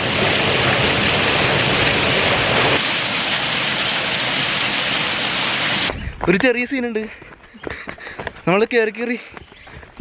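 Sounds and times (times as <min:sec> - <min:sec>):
rush of falling water: 0:00.0 - 0:06.0.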